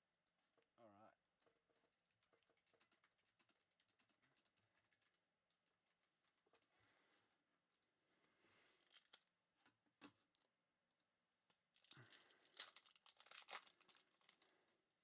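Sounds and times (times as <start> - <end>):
wrapper crinkling and tearing: 8.7 - 9.3, 11.7 - 14.7.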